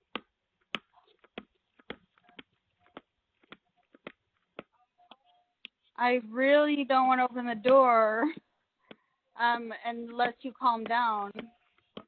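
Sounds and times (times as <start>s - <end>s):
faint clicks and taps: 0.1s - 6.0s, 10.0s - 12.0s.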